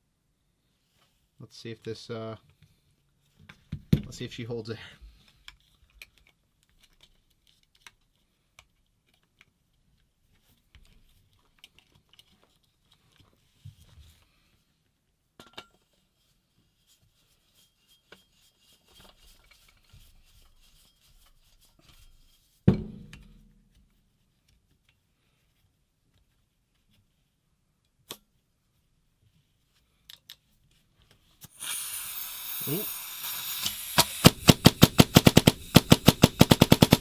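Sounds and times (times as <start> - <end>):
compressed air hiss: 31.4 - 37.0
paintball marker shot: 31.5 - 37.0.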